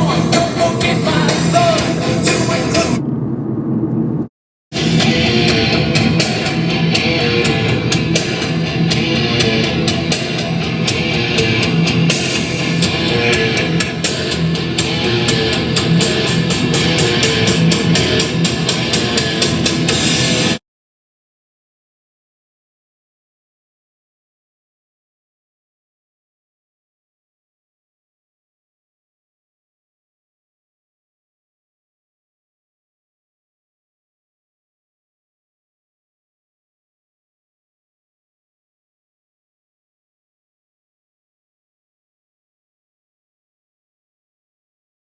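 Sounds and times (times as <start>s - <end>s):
rock music with guitar and drums: 0.0s - 3.0s, 4.8s - 20.6s.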